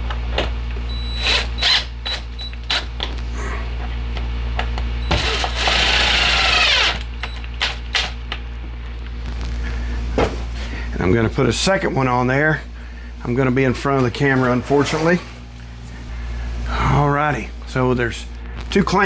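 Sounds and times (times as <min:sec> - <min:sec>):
steady low hum: 0:00.0 - 0:19.0
power drill driving a screw: 0:01.2 - 0:02.9, 0:05.1 - 0:08.1.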